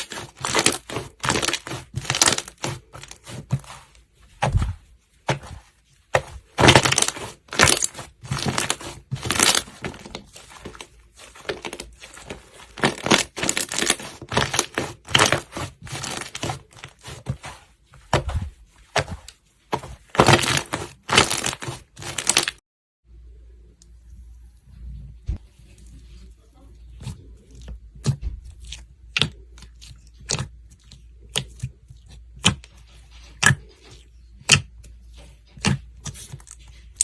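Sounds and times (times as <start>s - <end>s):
slime crackling and crunching: 0.0s - 22.6s.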